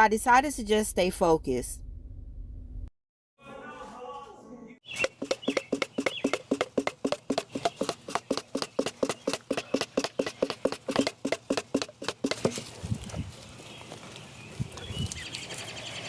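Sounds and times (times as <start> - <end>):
rapid even clicking: 5.0 - 12.5.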